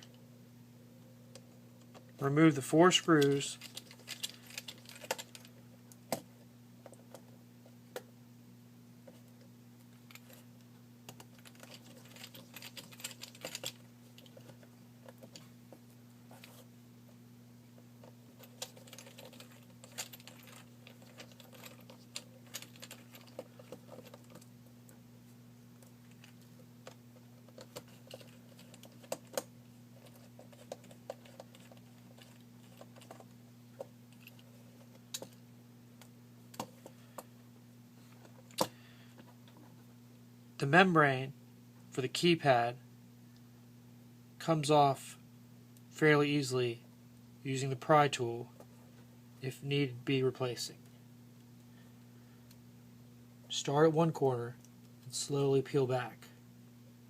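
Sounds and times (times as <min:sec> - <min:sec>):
low electrical hum: 0:00.0 - 0:57.0.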